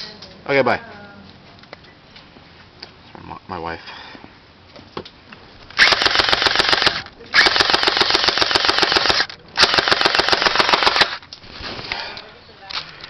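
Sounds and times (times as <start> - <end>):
airsoft machine gun firing: 5.7 - 11.2.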